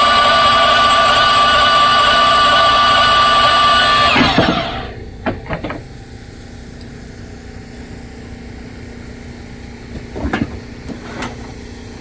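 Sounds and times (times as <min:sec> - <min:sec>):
motor winding down: 0:00.0 - 0:05.1
steady engine hum: 0:00.0 - 0:12.0.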